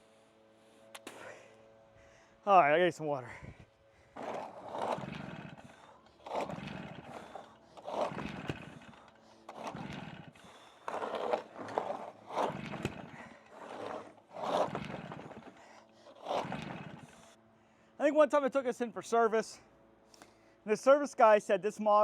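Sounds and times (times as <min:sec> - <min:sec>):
blower engine pull-start cranking: 0:04.1 - 0:17.4.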